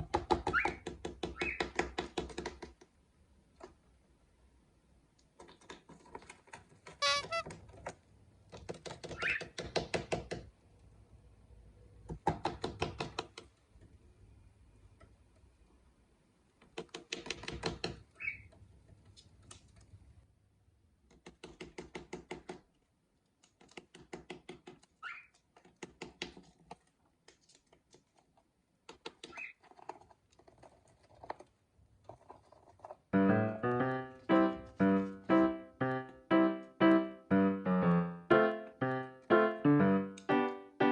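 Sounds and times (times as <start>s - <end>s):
piano music: 33.2s - 40.9s.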